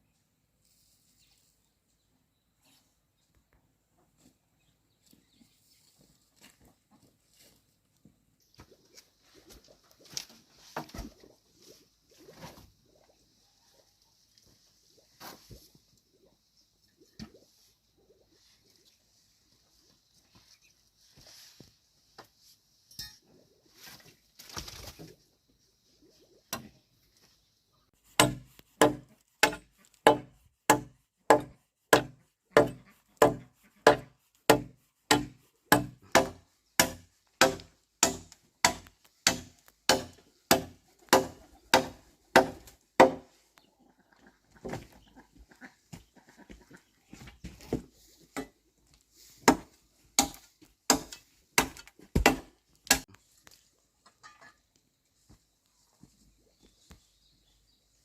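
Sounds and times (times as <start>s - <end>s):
blade chopping wood: 28.2s - 43.3s, 49.4s - 53.0s.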